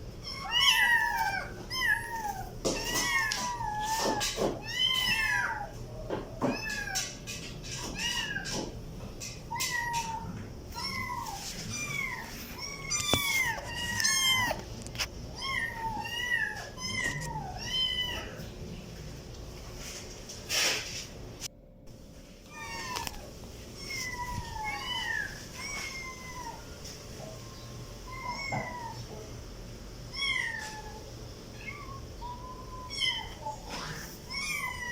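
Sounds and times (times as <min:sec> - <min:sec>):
kitten meowing: 0:00.2 - 0:05.7, 0:09.5 - 0:14.6.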